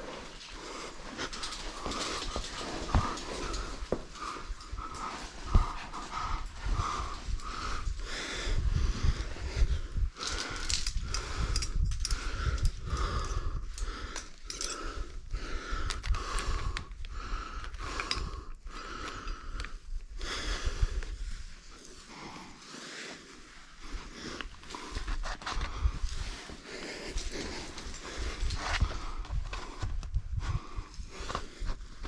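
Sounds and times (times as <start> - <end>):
hard rhythmic breathing: 0.0 - 32.0.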